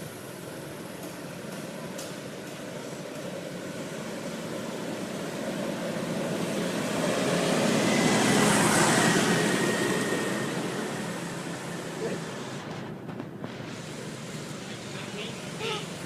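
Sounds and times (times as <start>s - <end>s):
vehicle passing by: 3.3s - 16.0s.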